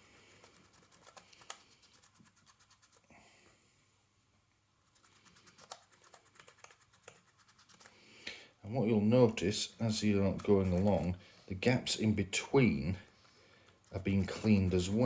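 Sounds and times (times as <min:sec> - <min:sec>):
cloth rubbing on keyboard: 0:04.8 - 0:08.0, 0:10.0 - 0:11.2, 0:13.8 - 0:15.0.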